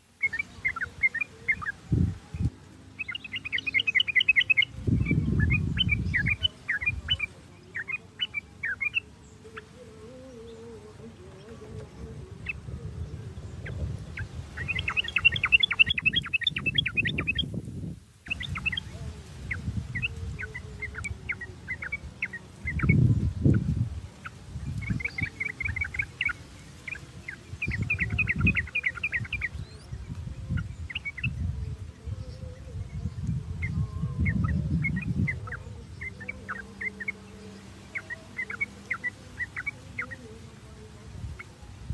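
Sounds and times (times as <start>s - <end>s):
bird chattering song: 0.0s - 17.6s, 18.2s - 41.9s
bird single calls: 3.0s - 10.6s, 13.6s - 17.5s, 18.3s - 23.6s, 33.6s - 40.3s.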